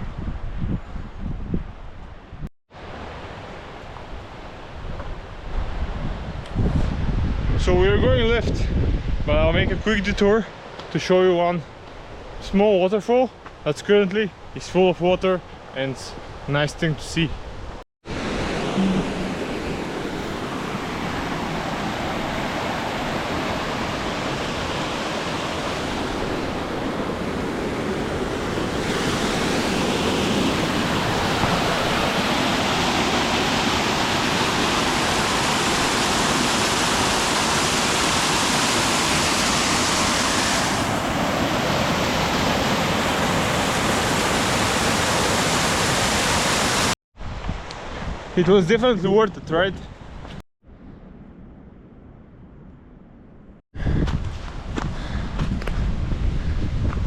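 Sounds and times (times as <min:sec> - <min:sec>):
waterfall rushing: 0:18.1 - 0:47.0.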